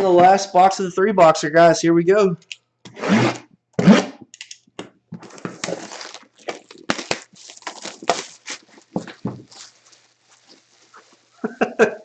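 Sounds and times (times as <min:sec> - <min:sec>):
shrink wrap tearing and crinkling: 0:05.2 - 0:11.4.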